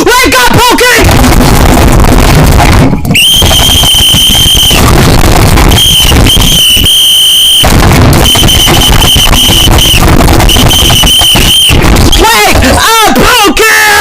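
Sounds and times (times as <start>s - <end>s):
distorted crackling noise: 0.0s - 14.0s
piercing high-pitched tone: 1.1s - 12.6s.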